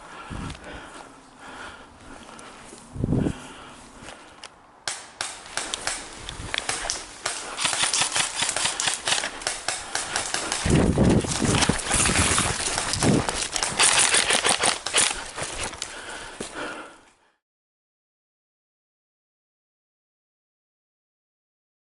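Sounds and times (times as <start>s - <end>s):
twigs rustling and snapping: 4.2s - 16.2s
footsteps crunching through undergrowth: 5.4s - 16.8s.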